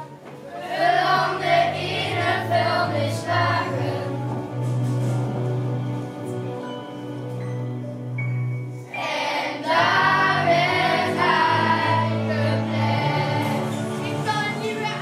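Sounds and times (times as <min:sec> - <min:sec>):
children's choir singing: 0:00.0 - 0:05.5, 0:08.9 - 0:15.0
instrumental backing music: 0:00.0 - 0:15.0.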